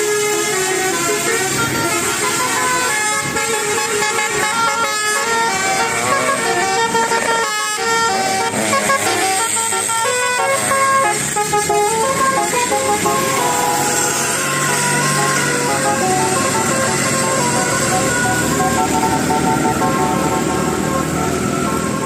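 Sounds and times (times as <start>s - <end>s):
multi-tone bus horn melody: 0.0s - 22.0s.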